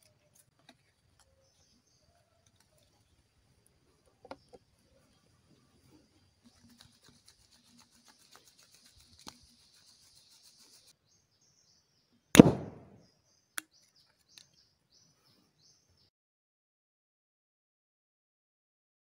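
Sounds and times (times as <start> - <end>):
faint bird chirps: 0.9 - 16.1
cannon bang: 12.4 - 13.0.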